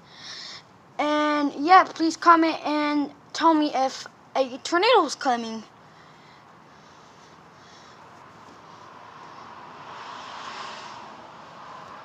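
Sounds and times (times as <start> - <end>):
vehicle passing: 6.7 - 12.0.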